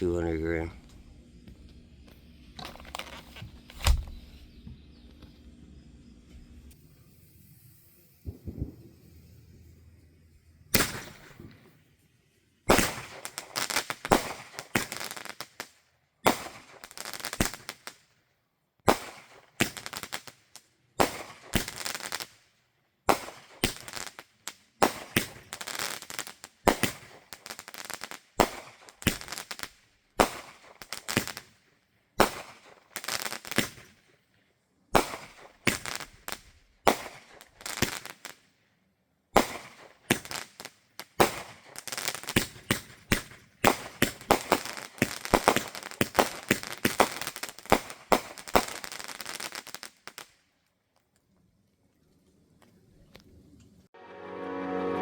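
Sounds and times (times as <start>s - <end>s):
fireworks crackling: 0.0s - 4.5s, 6.1s - 10.1s, 10.7s - 18.2s, 18.8s - 34.2s, 34.9s - 38.5s, 39.4s - 50.5s
fireworks bangs: 6.3s - 9.8s, 10.7s - 11.9s, 12.7s - 18.0s, 18.9s - 22.4s, 23.1s - 31.6s, 32.2s - 34.1s, 35.0s - 38.4s, 39.4s - 50.3s.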